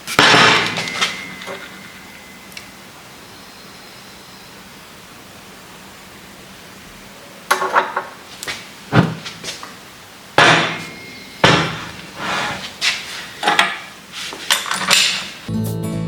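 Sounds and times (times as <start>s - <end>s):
metal tools knocking and clanking: 0.2s - 2.2s, 7.5s - 8.2s, 10.4s - 12.1s, 13.4s - 15.4s.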